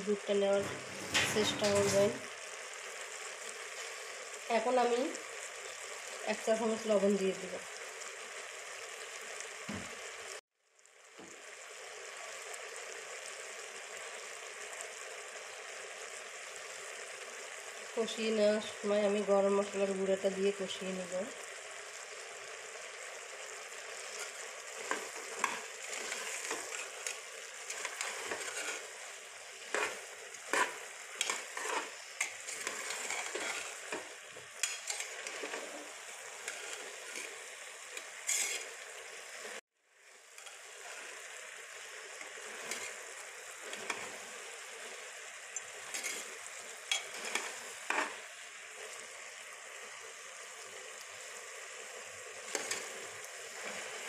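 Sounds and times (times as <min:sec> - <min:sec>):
chickpeas sizzling in oil: 0:00.0 - 0:54.0
spatula scraping a pan: 0:00.6 - 0:02.3, 0:24.0 - 0:38.8, 0:42.2 - 0:44.3, 0:45.8 - 0:48.2, 0:52.4 - 0:54.0.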